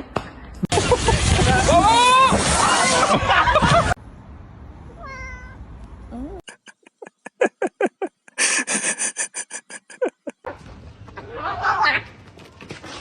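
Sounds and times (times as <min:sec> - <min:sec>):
cat meowing: 0:05.0 - 0:05.6.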